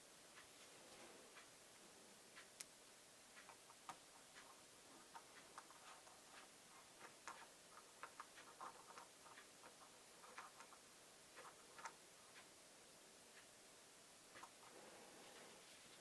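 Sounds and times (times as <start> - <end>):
light plastic clicks and ticks: 3.4 - 12.5, 14.3 - 14.8.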